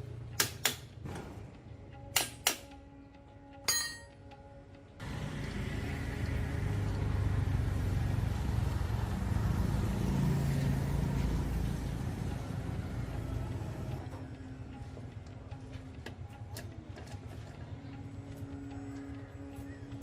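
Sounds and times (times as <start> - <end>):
machine humming and whirring: 5.0 - 20.0.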